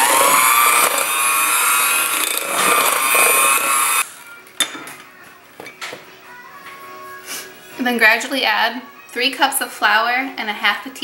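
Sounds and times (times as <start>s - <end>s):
electric mixer motor whining: 0.0s - 4.2s.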